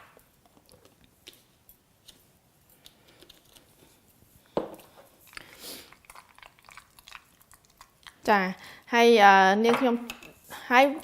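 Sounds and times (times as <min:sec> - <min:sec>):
kitchen items clicking and tapping: 0:09.6 - 0:10.4.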